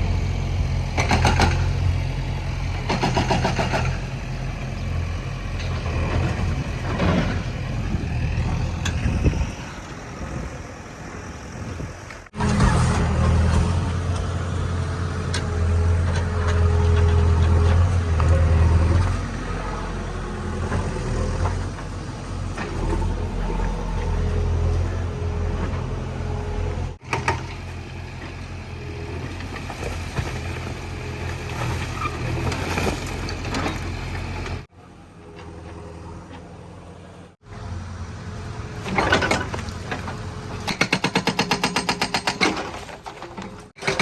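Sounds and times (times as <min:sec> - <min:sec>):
diesel engine running: 0:00.0 - 0:40.8
knocks and clatter from work: 0:01.0 - 0:01.8, 0:38.8 - 0:44.0.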